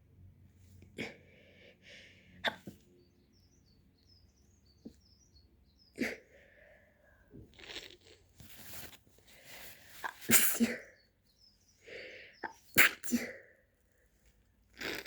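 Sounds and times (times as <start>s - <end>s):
girl sneezing: 10.0s - 10.9s, 12.8s - 13.5s.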